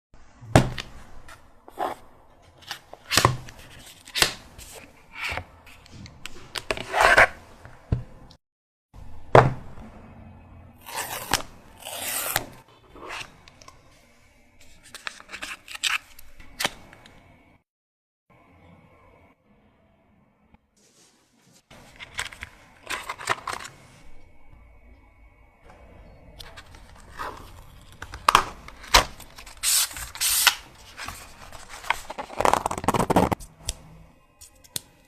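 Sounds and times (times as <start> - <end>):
paper rustling and tearing: 26.7 - 33.4.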